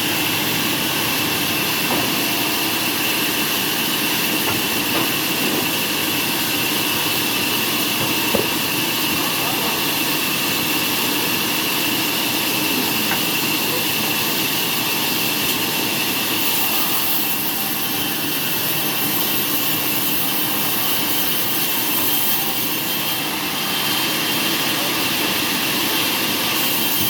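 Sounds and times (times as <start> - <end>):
machinery high whine: 0.0 - 17.1
sawmill machinery rushing: 0.0 - 27.0.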